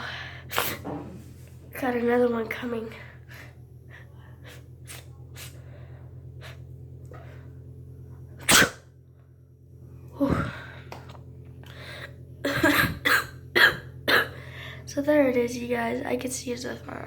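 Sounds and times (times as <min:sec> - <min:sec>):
woman sneezing: 0:08.4 - 0:08.8.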